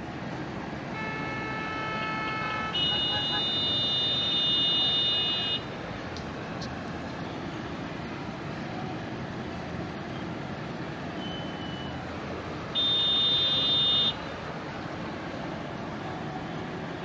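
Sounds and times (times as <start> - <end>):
road traffic noise: 0.0 - 17.0
vehicle horn honk: 1.0 - 5.6, 12.8 - 14.2.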